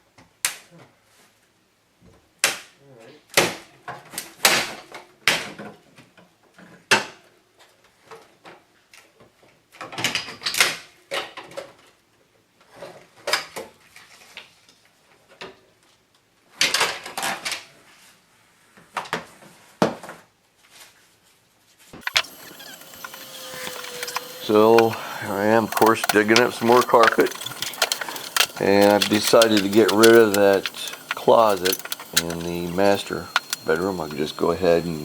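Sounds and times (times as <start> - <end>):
knocks and bangs of demolition: 22.0 - 35.0
rattling: 22.0 - 35.0.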